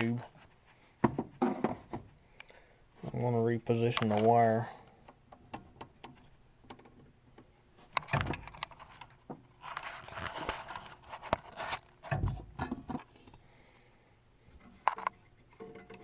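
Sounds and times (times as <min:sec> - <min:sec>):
dull thumps: 0:01.0 - 0:02.1, 0:12.0 - 0:13.0
clicks and knocks: 0:05.1 - 0:09.4
rustling and scraping: 0:07.8 - 0:13.4.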